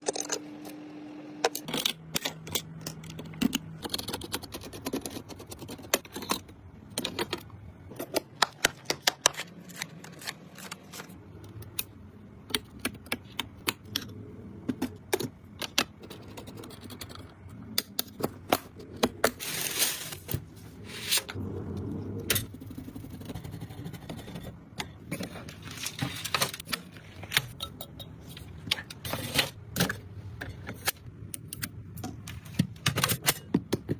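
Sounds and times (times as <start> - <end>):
computer parts clicking and tapping: 1.5 - 9.5, 11.5 - 14.1.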